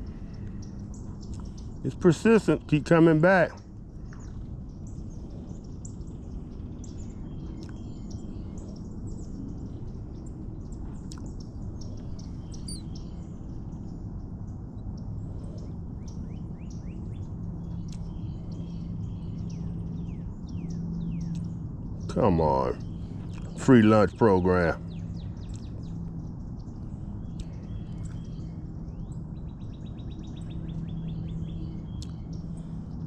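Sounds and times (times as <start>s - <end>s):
low background rumble: 0.0s - 33.0s
low steady hum: 0.0s - 33.0s
birds chirping and calling: 12.2s - 13.2s, 22.1s - 25.7s.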